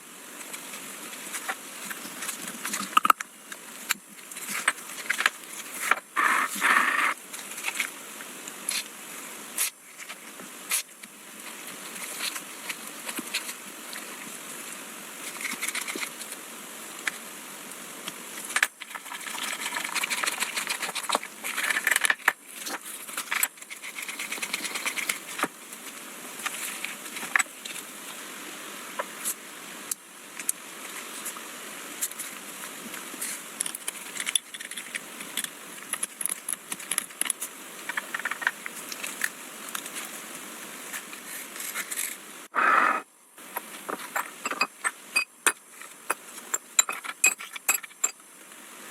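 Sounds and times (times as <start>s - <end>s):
scraping and rubbing: 4.3s - 8.0s, 18.4s - 27.8s, 40.8s - 44.7s
metal parts clicking and knocking: 18.5s - 22.4s, 33.6s - 39.2s, 46.5s - 48.2s.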